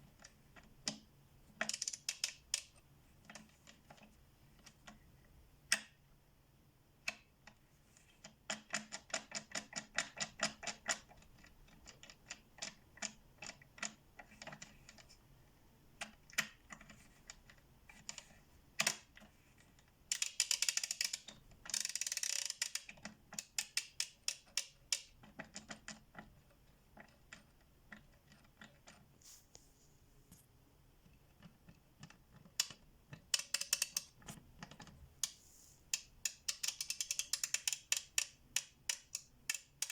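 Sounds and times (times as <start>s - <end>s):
ratchet clicking: 20.1s - 25.0s, 36.0s - 39.9s.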